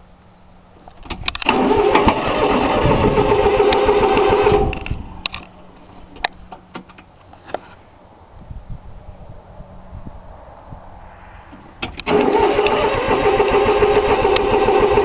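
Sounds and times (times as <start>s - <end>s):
diesel engine cranking: 0.8s - 7.1s, 11.6s - 15.0s.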